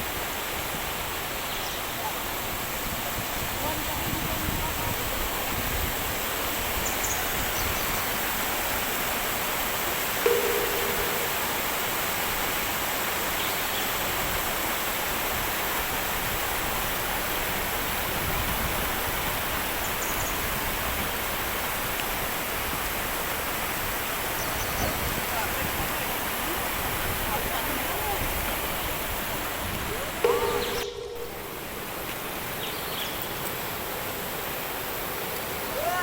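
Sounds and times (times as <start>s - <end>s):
rushing river water: 0.0s - 36.0s
brief single tone: 10.2s - 11.8s, 30.2s - 31.8s
faint high chirps: 10.2s - 11.9s, 30.2s - 32.0s.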